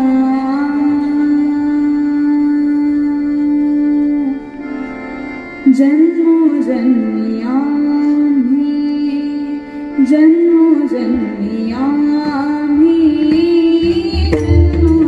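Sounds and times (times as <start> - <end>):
hand drum strokes: 13.8 - 15.0.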